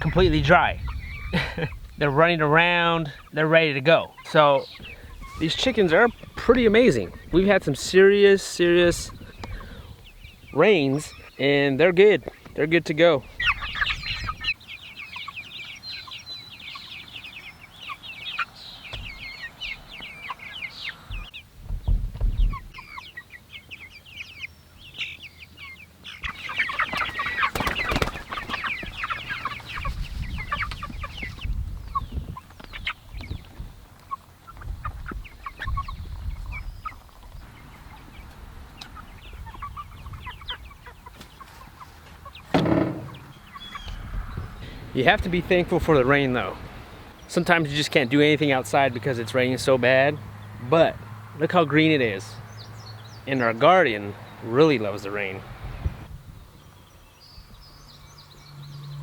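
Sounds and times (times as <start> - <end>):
chickens peeping and clucking: 0.0 - 59.0
dull low thumps: 18.9 - 19.3, 21.1 - 22.7, 42.5 - 46.7.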